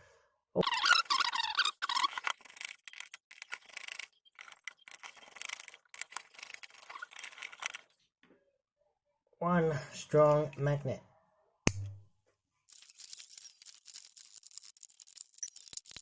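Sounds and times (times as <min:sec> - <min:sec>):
metal parts scraping and clicking: 0:00.6 - 0:08.0, 0:12.7 - 0:16.0.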